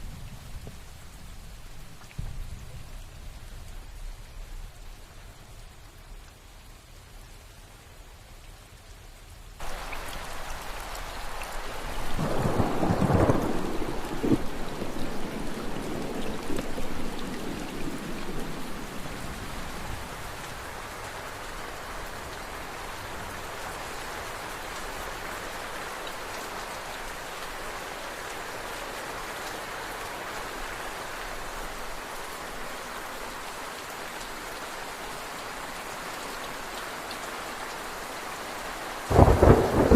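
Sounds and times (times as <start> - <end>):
steady rain: 0.0 - 39.9
thunderclap rumbling: 11.7 - 20.1, 39.1 - 39.9.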